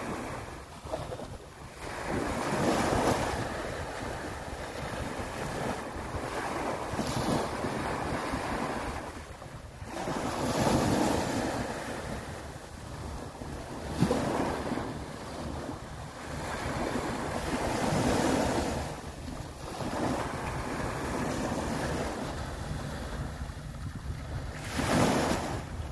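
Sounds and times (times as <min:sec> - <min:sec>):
sea waves breaking on beach: 0:00.0 - 0:25.9
wind buffeting microphone: 0:00.0 - 0:25.9.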